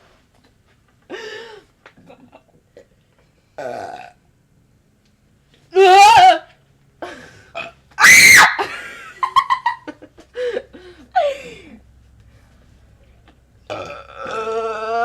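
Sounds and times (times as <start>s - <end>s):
long wavering burp: 3.6s - 4.2s, 13.7s - 15.0s
person screaming: 5.8s - 6.5s, 8.0s - 8.7s
giggling and laughter: 8.6s - 11.8s.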